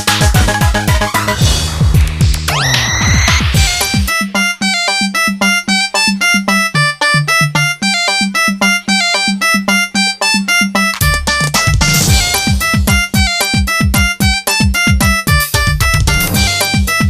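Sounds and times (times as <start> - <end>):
heavy bass: 0.0 - 4.1, 11.0 - 13.3, 15.3 - 17.0
electronic keyboard music: 0.0 - 17.0.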